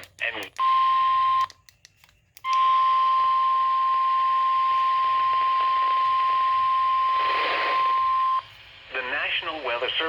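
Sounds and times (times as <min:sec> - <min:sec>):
clicks: 0:01.4 - 0:02.6
radio receiver hiss: 0:04.6 - 0:10.0.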